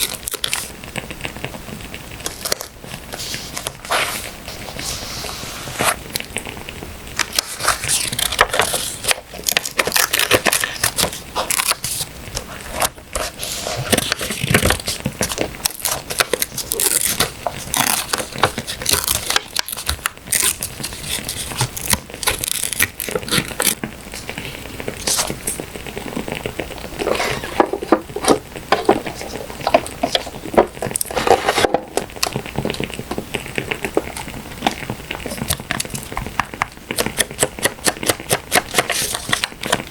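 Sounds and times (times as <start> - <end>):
paper rustling and tearing: 2.4 - 6.0, 7.2 - 23.8, 27.0 - 30.4, 31.0 - 31.9, 37.8 - 39.9.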